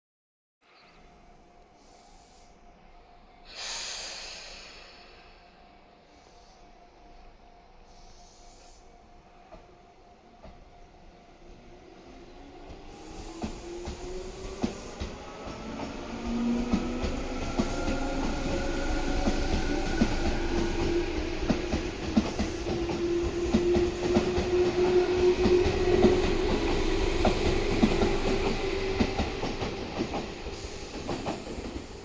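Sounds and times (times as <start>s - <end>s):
train traction motors humming: 12.3s - 32.0s.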